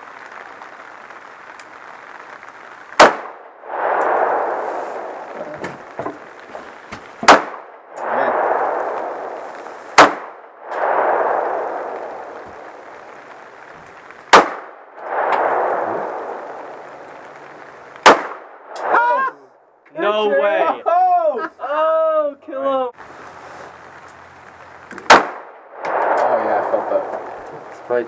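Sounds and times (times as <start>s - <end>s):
pistol shots with echo: 3.0s - 4.1s, 7.2s - 7.7s, 10.0s - 11.9s, 14.3s - 16.2s, 18.0s - 18.6s, 25.1s - 26.7s.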